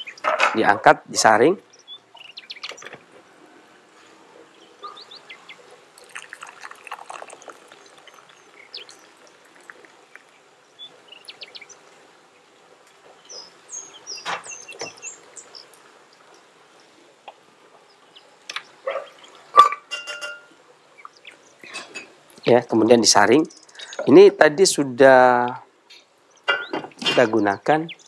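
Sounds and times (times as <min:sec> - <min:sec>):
birds chirping: 0:00.0 - 0:28.0
liquid pouring through strainer: 0:06.0 - 0:10.3
utensils clinking: 0:19.6 - 0:20.5.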